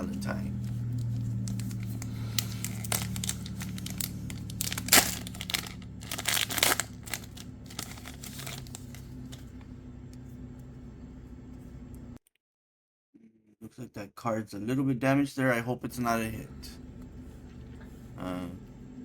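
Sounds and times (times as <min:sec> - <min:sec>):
cards rustling: 0:00.1 - 0:09.7
foil pack tearing and crinkling: 0:00.6 - 0:09.5.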